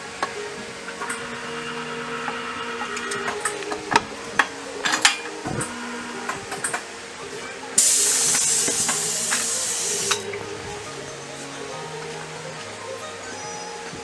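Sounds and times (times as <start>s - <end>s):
background music: 0.0s - 14.0s
pressurized spray hissing: 7.8s - 10.4s.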